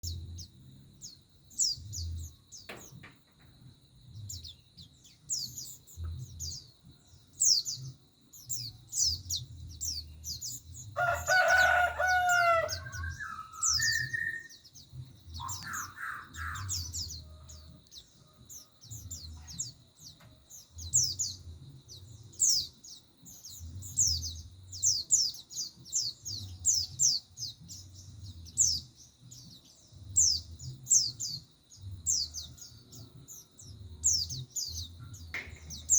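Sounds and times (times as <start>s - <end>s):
rooster crowing: 11.0s - 14.5s
bird giving high chirps: 11.0s - 14.6s.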